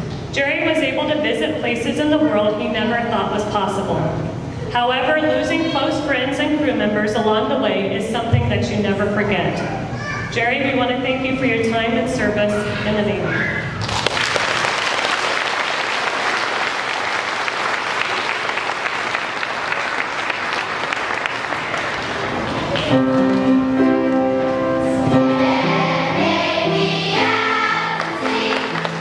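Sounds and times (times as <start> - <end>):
audience applauding: 13.8 - 23.4, 27.6 - 29.0.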